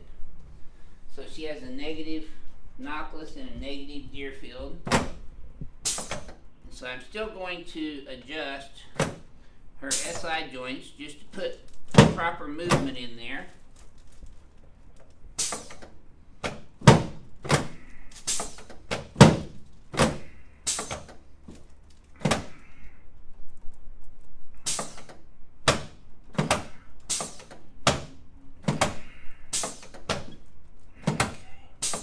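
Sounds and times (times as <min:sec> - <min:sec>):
dull thumps: 0:15.5 - 0:22.6.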